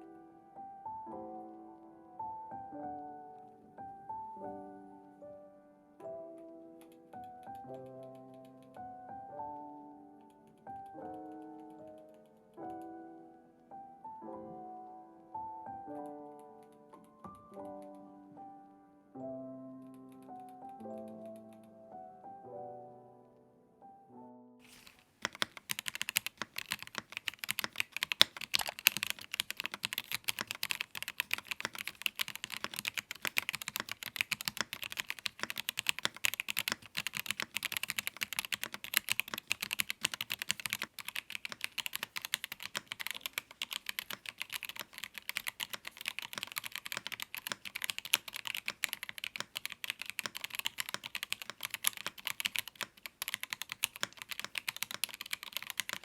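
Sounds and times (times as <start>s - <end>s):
mechanical keyboard typing: 24.7s - 56.0s.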